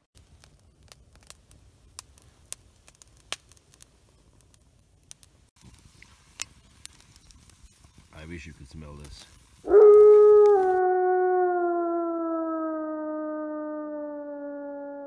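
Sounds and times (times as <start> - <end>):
campfire crackling and popping: 0.0 - 10.8.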